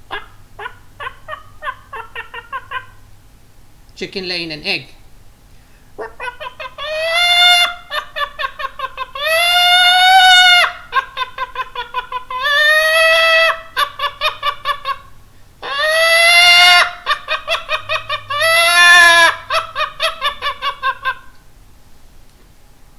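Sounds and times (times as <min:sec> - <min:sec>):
person imitating hen clucks: 0:00.0 - 0:03.0, 0:06.0 - 0:15.0
person squawking like a hen: 0:00.0 - 0:03.0, 0:06.0 - 0:15.0, 0:15.6 - 0:21.2.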